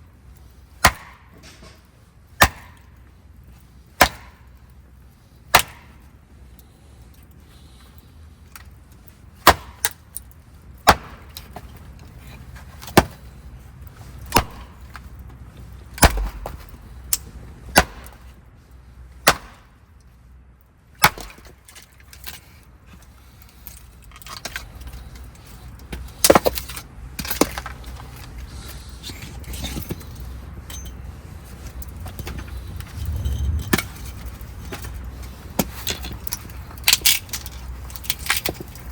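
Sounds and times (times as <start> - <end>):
low steady background noise: 0.0 - 38.9
sharp knocks: 16.0 - 16.6.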